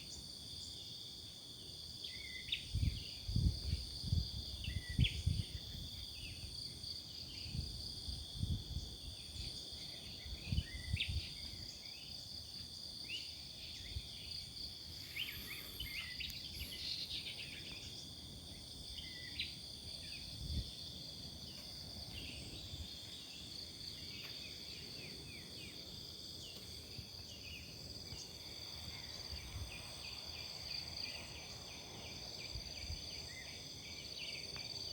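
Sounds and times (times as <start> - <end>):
insect chorus: 0.0 - 34.9
bird chirps: 15.0 - 18.0.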